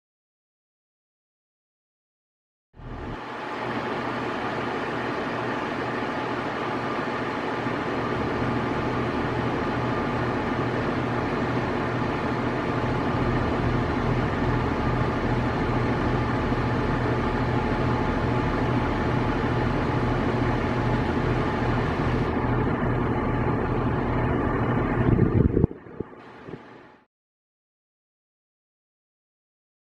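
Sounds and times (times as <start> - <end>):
large vehicle engine running: 6.9 - 26.7.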